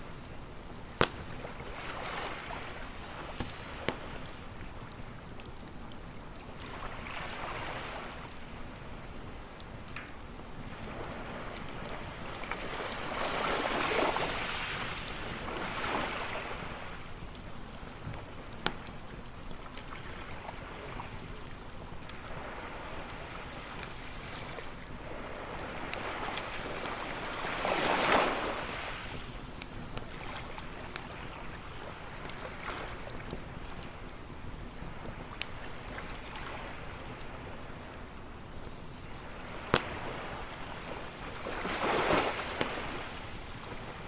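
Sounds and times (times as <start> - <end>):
campfire pops and crackles: 0.0 - 44.0
waves breaking on beach: 1.0 - 4.5, 6.6 - 8.6, 10.7 - 17.0, 22.2 - 29.4, 30.1 - 33.3, 39.2 - 44.0
surf wash: 10.7 - 17.0, 22.2 - 29.3, 39.2 - 44.0.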